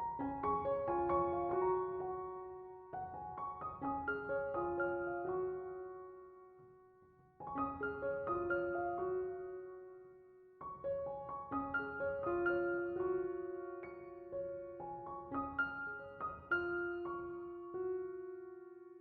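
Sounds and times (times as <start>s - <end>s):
solo piano music: 0.0s - 19.0s.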